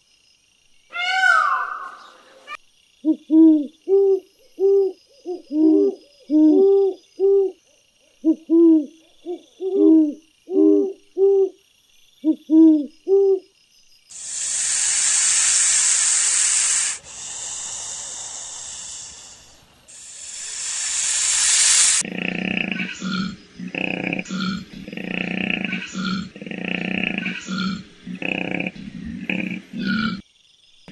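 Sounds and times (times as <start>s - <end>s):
animal hooting calls: 0.9s - 2.6s, 20.4s - 30.2s
loud hiss: 14.1s - 22.0s.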